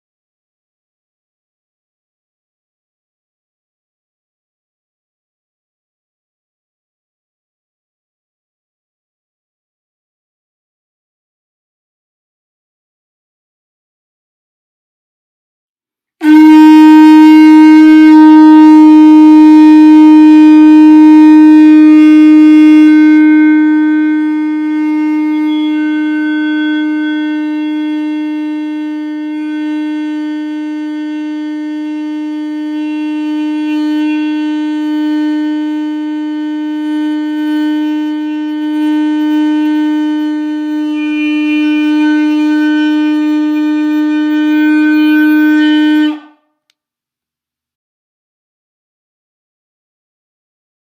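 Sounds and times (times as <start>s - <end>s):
shofar sounding a low note: 16.2s - 46.4s.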